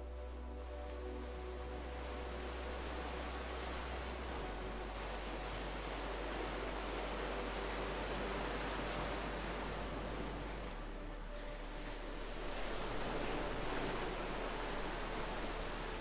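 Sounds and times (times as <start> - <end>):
ocean surf: 2.4 - 10.8, 11.8 - 16.0.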